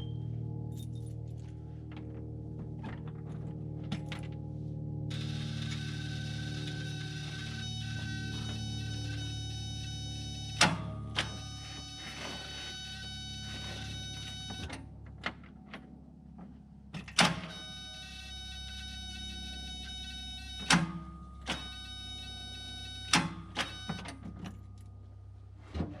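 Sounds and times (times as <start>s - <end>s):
steady high tone: 5.1s - 14.6s
starter motor clunks: 5.1s - 15.9s.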